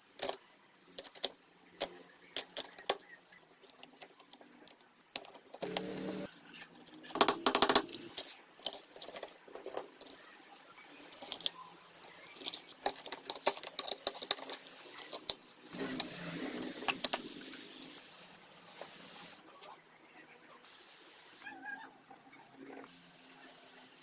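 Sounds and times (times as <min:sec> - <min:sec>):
metal parts and tools clinking: 0:03.8 - 0:05.9, 0:06.5 - 0:10.3, 0:11.0 - 0:17.2.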